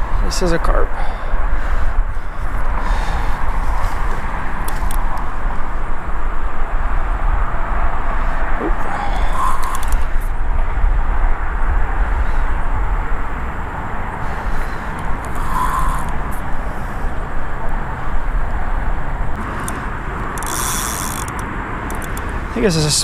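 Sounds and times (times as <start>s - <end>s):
heavy low rumble: 0.9s - 23.0s.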